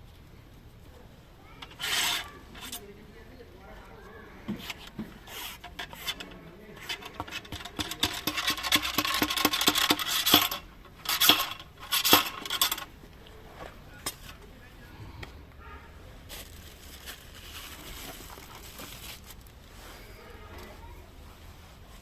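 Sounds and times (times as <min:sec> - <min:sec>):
loud scrapes: 0:01.6 - 0:02.8, 0:04.5 - 0:12.9
metallic clinking and rattling: 0:01.6 - 0:02.9, 0:04.7 - 0:13.0.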